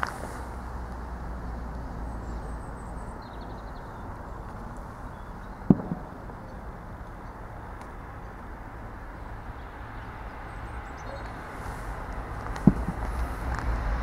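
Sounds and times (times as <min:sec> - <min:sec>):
low outdoor rumble: 0:00.0 - 0:14.0
faint bird chirps: 0:09.6 - 0:11.5.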